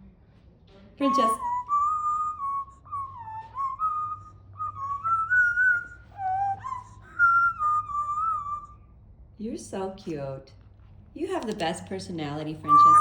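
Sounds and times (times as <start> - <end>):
person whistling a melody: 1.0 - 8.8, 12.7 - 13.0.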